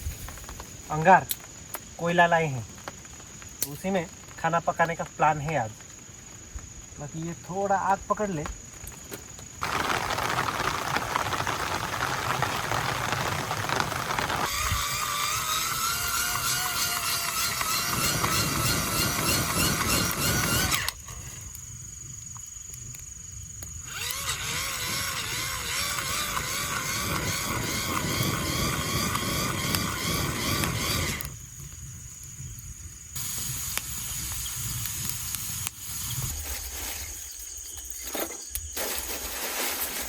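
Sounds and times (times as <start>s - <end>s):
small motor whining: 13.6s - 21.0s, 23.8s - 31.3s.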